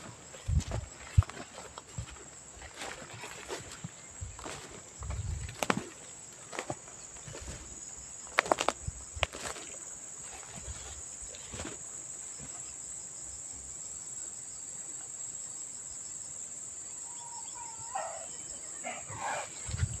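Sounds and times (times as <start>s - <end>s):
insect chorus: 0.0s - 20.0s
animal wavering calls: 17.0s - 19.7s.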